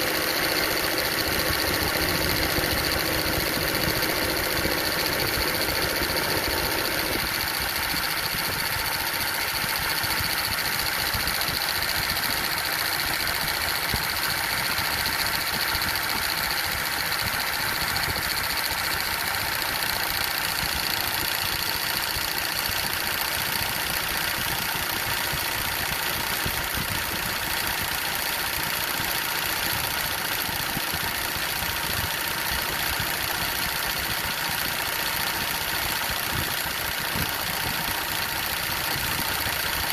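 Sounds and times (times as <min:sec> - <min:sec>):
high-pitched compressor whine: 0:00.0 - 0:27.9
diesel engine idling: 0:00.0 - 0:30.2.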